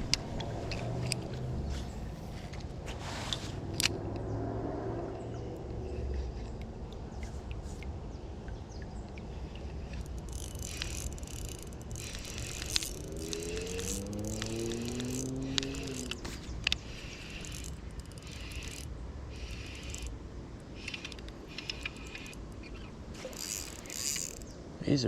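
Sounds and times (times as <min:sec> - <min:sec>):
sharp clicks and ticks: 0:05.1 - 0:24.5.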